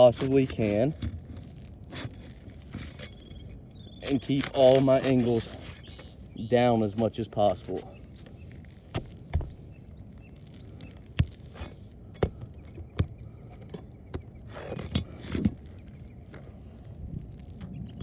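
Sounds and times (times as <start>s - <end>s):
scraping rasp: 0.0s - 8.3s
metal bar clicking on shingles: 4.0s - 6.2s.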